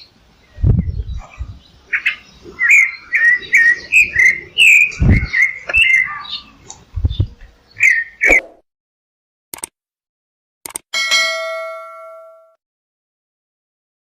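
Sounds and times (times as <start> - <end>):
songbird chirping: 0.0 - 8.4
sharp high clicks: 9.5 - 9.8, 10.6 - 10.9.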